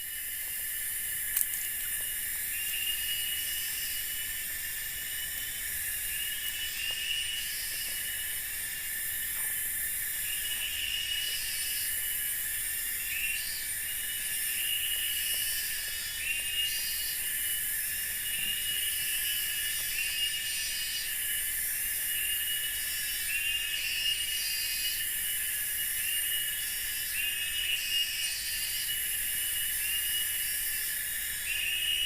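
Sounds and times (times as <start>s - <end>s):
insects buzzing: 0.0s - 32.0s
short rising insect call: 0.0s - 32.0s.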